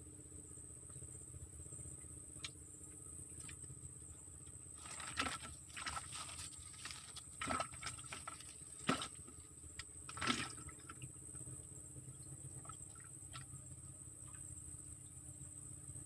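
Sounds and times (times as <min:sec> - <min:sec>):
steady high-pitched hum: 0:00.0 - 0:16.0
small water splashes and knocks: 0:04.8 - 0:11.2, 0:12.6 - 0:13.6.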